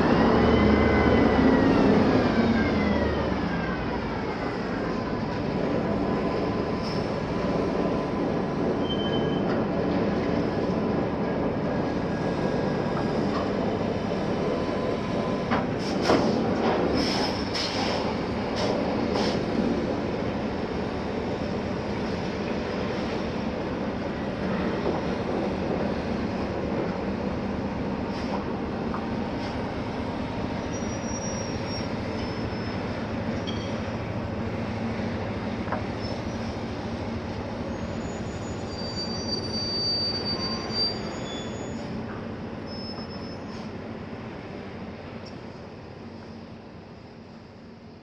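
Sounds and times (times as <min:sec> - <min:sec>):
high-pitched squeals: 0:37.7 - 0:41.9.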